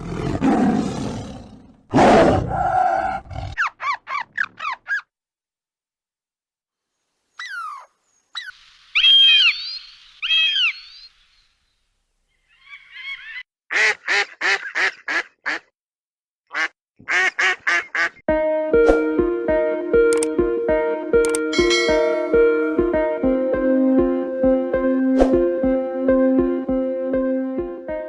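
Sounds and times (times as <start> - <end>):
duck quacking: 13.7 - 15.7, 16.5 - 18.2
music: 18.3 - 28.0.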